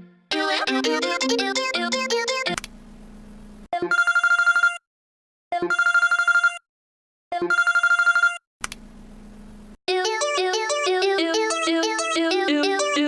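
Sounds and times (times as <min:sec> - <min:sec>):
telephone ringing: 0:03.9 - 0:04.8, 0:05.7 - 0:06.6, 0:07.5 - 0:08.4.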